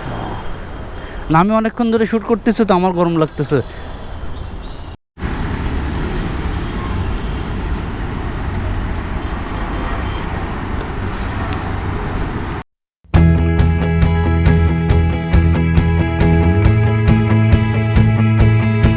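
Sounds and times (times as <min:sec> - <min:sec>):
road traffic rumble: 0:00.0 - 0:12.6.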